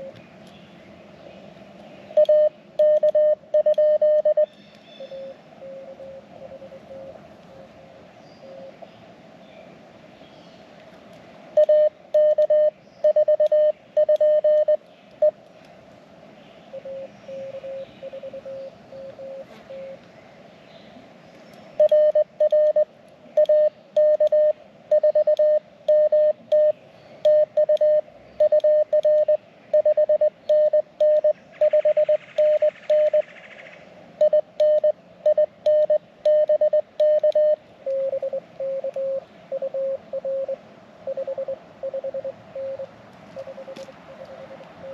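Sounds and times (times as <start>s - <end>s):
low background hiss: 0.0s - 44.9s
louder morse code tone: 2.2s - 7.1s, 11.6s - 15.4s, 16.8s - 20.0s, 21.8s - 33.2s, 34.2s - 44.9s
fainter lower morse code tone: 2.2s - 7.6s, 8.4s - 8.8s, 11.5s - 15.4s, 16.7s - 20.0s, 21.8s - 33.3s, 34.2s - 44.9s.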